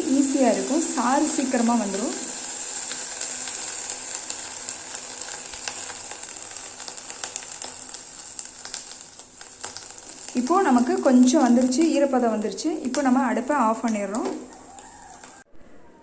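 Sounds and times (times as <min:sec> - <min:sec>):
leaves sizzling in a hot pan: 0:00.0 - 0:15.4.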